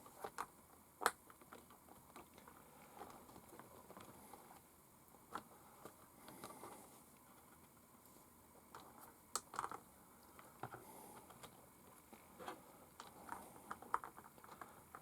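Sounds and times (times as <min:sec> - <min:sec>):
small clicks and taps of parts: 0:08.7 - 0:15.0.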